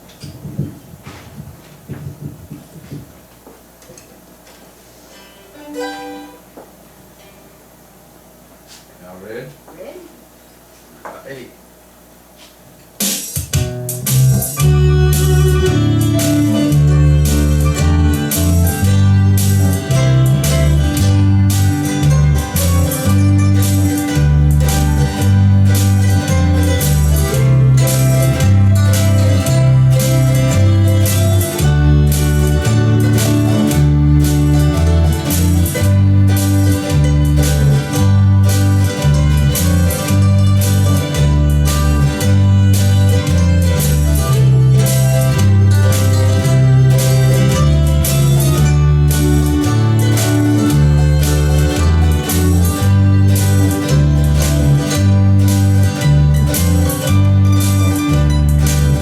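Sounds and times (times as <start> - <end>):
strummed guitar: 5.0 - 7.5, 13.0 - 59.0
plucked strings: 5.2 - 7.3, 13.5 - 59.0
mandolin picking melody: 5.2 - 7.4, 13.6 - 59.0
deep bass notes: 13.6 - 59.0.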